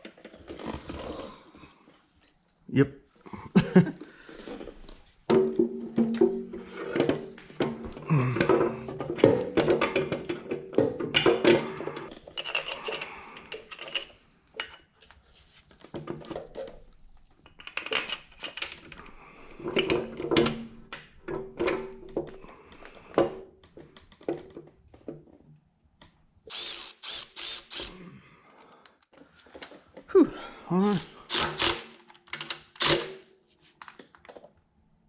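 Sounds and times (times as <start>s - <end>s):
power drill running in bursts: 26.5s - 27.9s, 31.3s - 31.9s.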